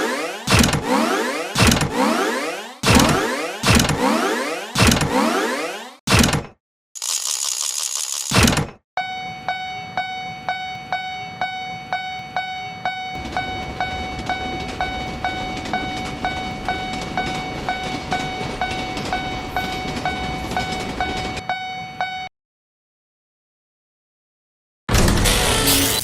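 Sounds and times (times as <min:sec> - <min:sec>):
railroad crossing bell ringing: 0:09.0 - 0:22.3
train passing with rumble: 0:13.2 - 0:21.4.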